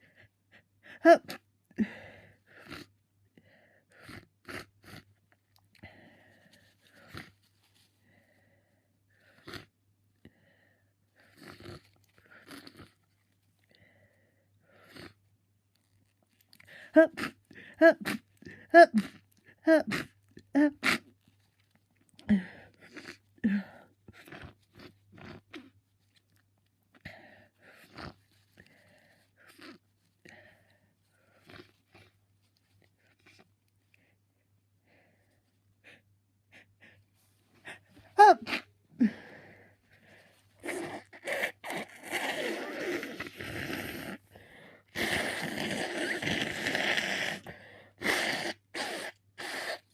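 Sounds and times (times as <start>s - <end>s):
stifled sneezes: 16.8s - 21.1s, 37.6s - 39.2s, 44.9s - 49.9s
person sniffing raspily: 19.9s - 21.1s, 37.6s - 49.9s.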